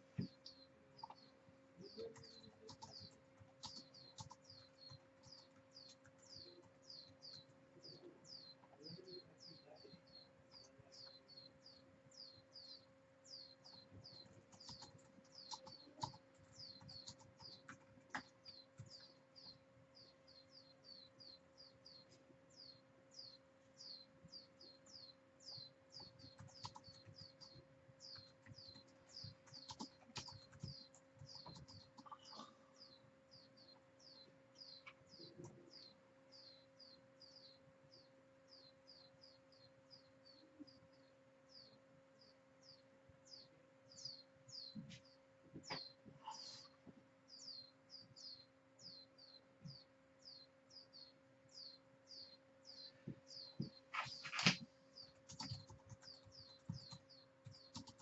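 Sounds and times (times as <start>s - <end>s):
bird chirping: 0.0s - 58.0s.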